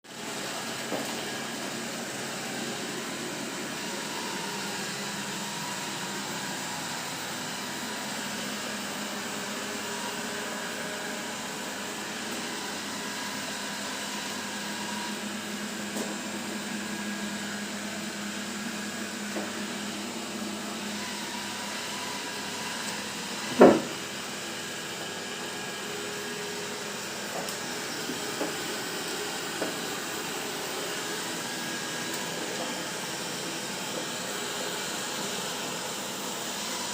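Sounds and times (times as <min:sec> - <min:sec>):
loud knock: 0:23.6 - 0:23.9.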